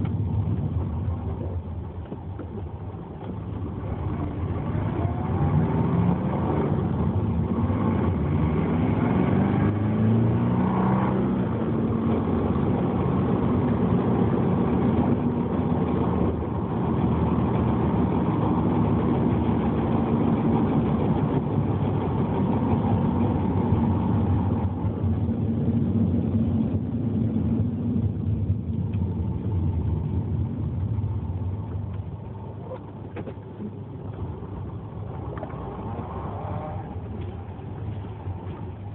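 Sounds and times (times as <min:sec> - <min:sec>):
car engine revving while driving: 0:03.2 - 0:31.8, 0:34.0 - 0:38.9.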